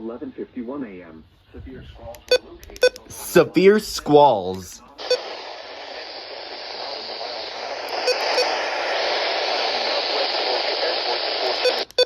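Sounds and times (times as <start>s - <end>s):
radio static hiss: 3.0s - 12.0s.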